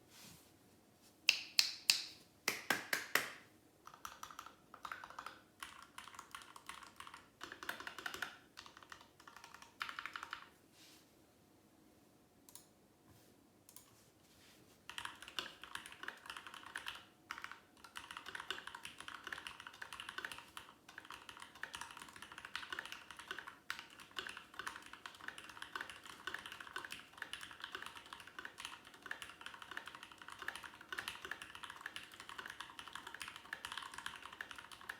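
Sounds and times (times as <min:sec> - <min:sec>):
typing on mechanical keyboard: 0:03.9 - 0:10.5, 0:14.9 - 0:34.9.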